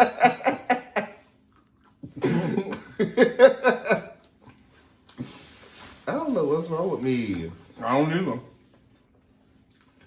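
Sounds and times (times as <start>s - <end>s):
person laughing hard: 0.0s - 1.2s, 2.6s - 4.2s.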